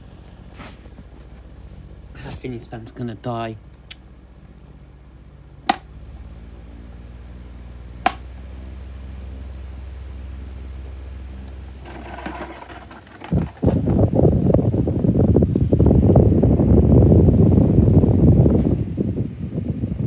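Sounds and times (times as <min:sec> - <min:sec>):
desk fan motor humming: 0:00.0 - 0:20.0
wind noise on microphone: 0:12.0 - 0:20.0.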